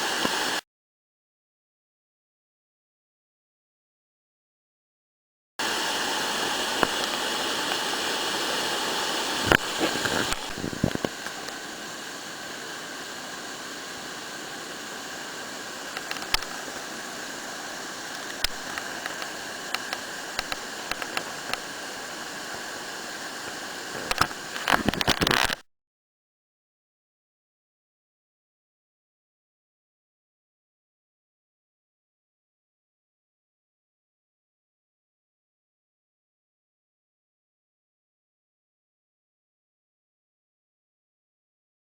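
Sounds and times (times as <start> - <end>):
river water rushing: 5.6 - 25.5.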